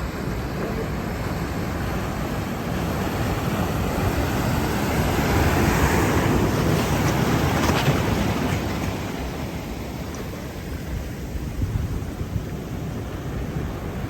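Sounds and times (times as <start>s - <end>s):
ocean waves breaking: 0.0s - 14.0s
wind rumbling on microphone: 0.0s - 14.0s.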